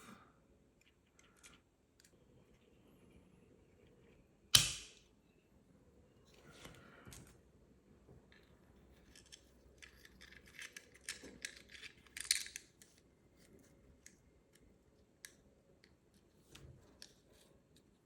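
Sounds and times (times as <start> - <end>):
plastic parts clicking and scraping: 9.0 - 13.0.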